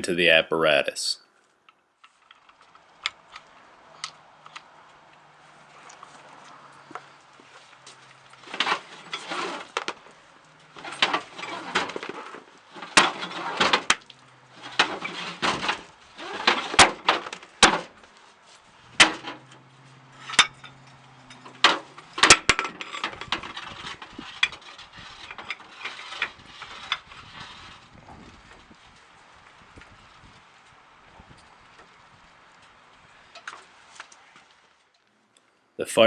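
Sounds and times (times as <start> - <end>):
hose scraping and rustling: 5.4 - 34.9
metallic clanks and knocks: 18.9 - 27.1.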